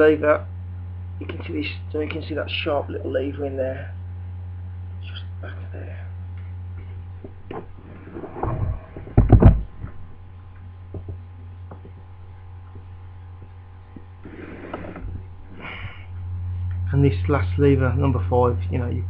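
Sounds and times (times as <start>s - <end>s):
low mains hum: 0.0s - 19.0s.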